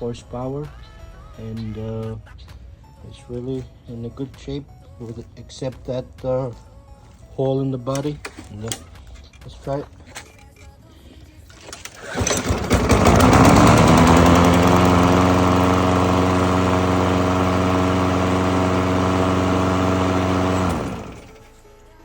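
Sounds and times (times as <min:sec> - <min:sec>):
lawn mower engine running: 0:11.6 - 0:21.5.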